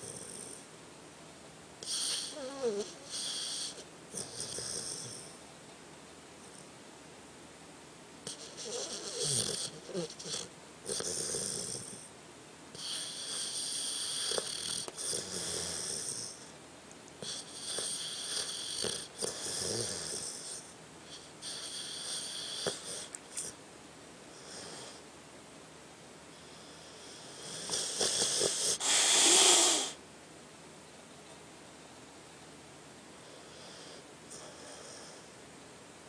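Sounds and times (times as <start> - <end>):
dog snoring with whistle: 0.0 - 0.7, 1.8 - 5.4, 8.2 - 12.1, 12.7 - 16.5, 17.2 - 23.6, 24.3 - 25.0, 26.3 - 30.0, 33.2 - 35.3.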